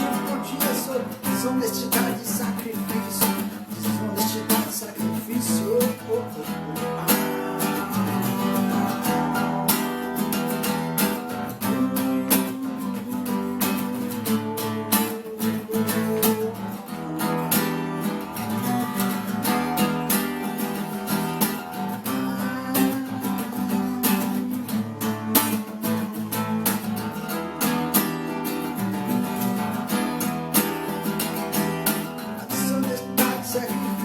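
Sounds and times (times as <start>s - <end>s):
acoustic guitar strumming: 0.0s - 34.0s.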